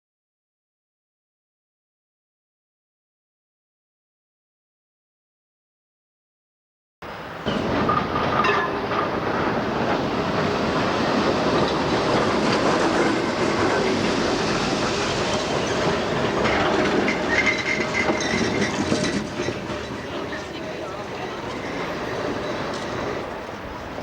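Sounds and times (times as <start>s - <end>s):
tram wheels rattling on track: 7.1s - 24.0s
high wheel squeals: 11.0s - 24.0s.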